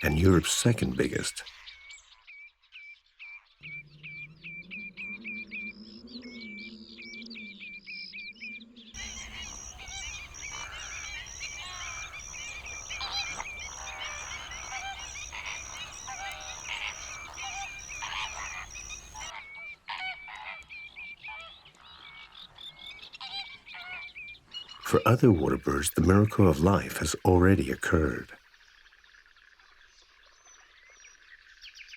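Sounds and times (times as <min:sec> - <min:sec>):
flamingos honking: 0:09.0 - 0:19.3.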